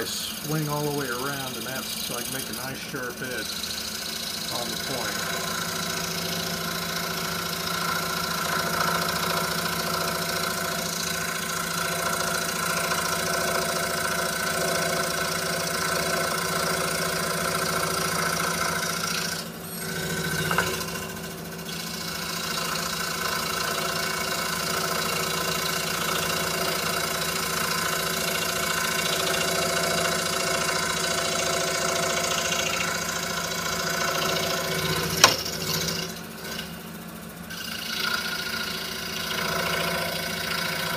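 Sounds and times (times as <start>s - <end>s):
scroll saw cutting wood: 0.0s - 36.7s
sharp click: 35.2s - 35.5s.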